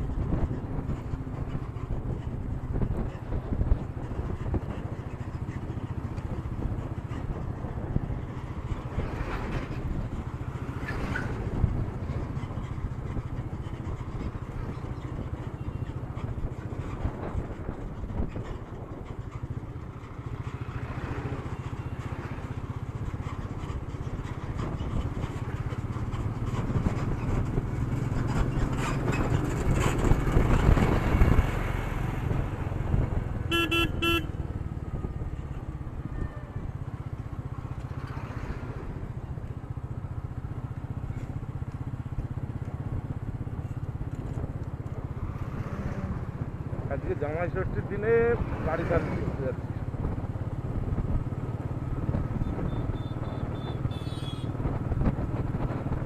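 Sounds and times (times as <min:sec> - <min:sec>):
passing vehicle: 0:00.0 - 0:56.0
road noise: 0:00.0 - 0:56.0
motorcycle engine running: 0:11.5 - 0:46.9, 0:49.6 - 0:56.0
short horn beeps: 0:33.5 - 0:34.3.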